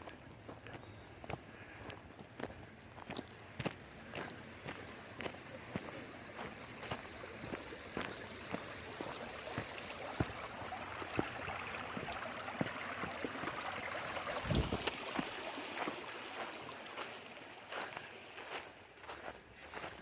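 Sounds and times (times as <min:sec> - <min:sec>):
footsteps walking: 0:00.0 - 0:10.4, 0:14.5 - 0:20.0
running water rushing: 0:05.3 - 0:20.0.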